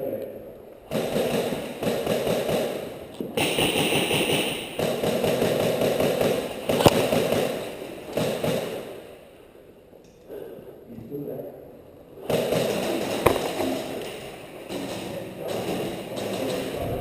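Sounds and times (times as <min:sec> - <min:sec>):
airsoft rifles firing full auto: 0:00.9 - 0:09.4, 0:12.2 - 0:16.8
sharp crack: 0:00.9 - 0:10.2, 0:12.2 - 0:17.0.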